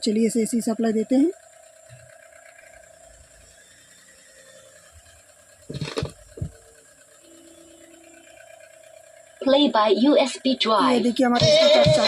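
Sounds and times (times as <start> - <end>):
faint steady hum: 0.0 - 12.0
speaker power thumps: 5.7 - 6.6, 11.3 - 12.0.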